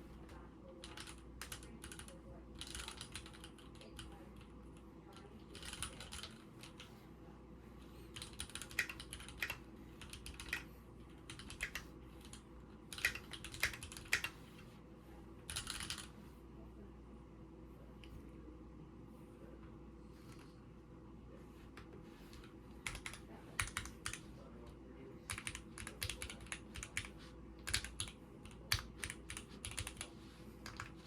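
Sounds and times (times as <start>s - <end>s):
mechanical keyboard keys clacking: 0.8s - 4.0s, 5.6s - 6.8s, 8.2s - 10.6s, 12.9s - 14.3s, 15.5s - 16.1s, 22.8s - 24.2s, 25.3s - 30.9s.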